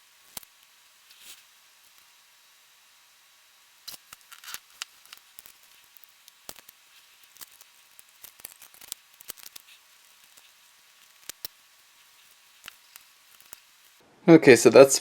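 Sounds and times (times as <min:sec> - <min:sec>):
plastic film snips and crackles: 0:03.8 - 0:14.0.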